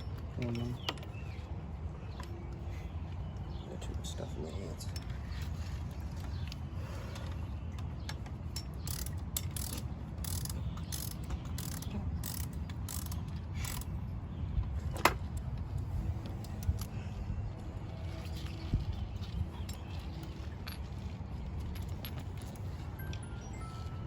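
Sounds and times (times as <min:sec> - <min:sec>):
ratchet wrench clicking: 0:08.5 - 0:13.9.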